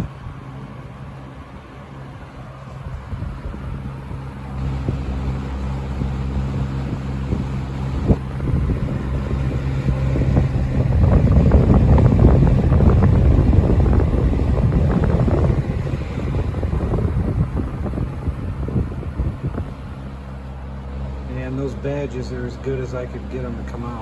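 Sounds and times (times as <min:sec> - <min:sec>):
box fan motor humming: 0:00.0 - 0:24.0
wind buffeting microphone: 0:00.0 - 0:24.0
rush of air: 0:02.2 - 0:21.3.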